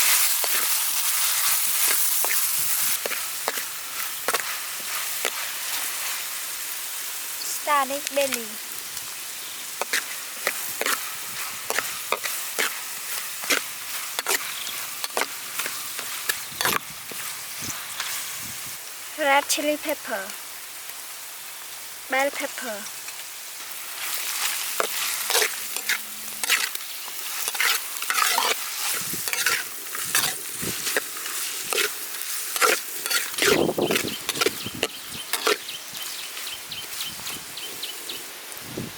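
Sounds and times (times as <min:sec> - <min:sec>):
spatula scraping pan: 0:00.0 - 0:06.2, 0:09.8 - 0:18.3, 0:24.0 - 0:35.7
oil sizzling: 0:00.0 - 0:38.9.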